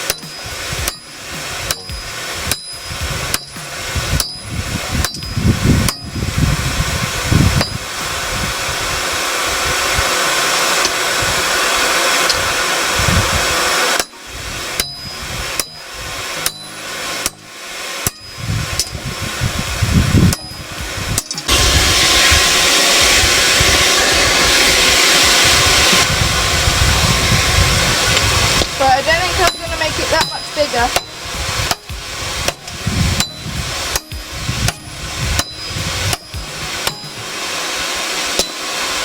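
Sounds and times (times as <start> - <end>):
hammer striking steel on anvil: 0.0 - 6.0, 14.8 - 17.4, 29.4 - 34.8
steady rushing noise: 0.0 - 39.0.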